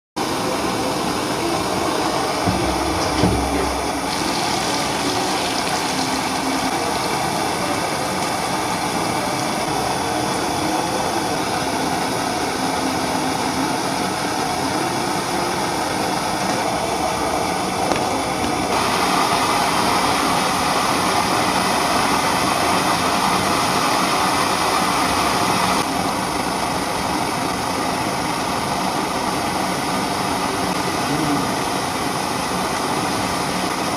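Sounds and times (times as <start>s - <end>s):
pressure stove burner rushing: 0.2s - 33.9s
low thump: 2.4s - 4.1s.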